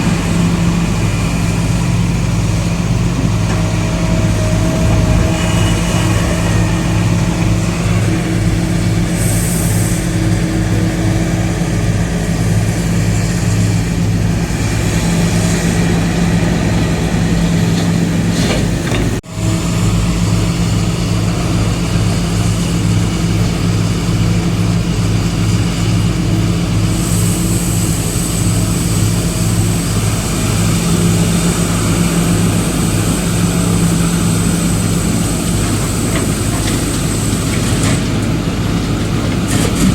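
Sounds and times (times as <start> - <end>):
diesel engine running steadily: 0.0 - 39.9.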